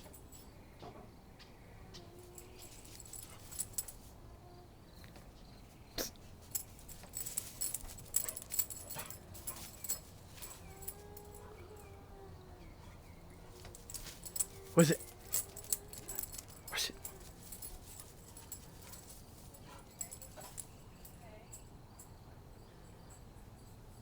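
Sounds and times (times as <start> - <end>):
dog whining softly: 7.6 - 17.9.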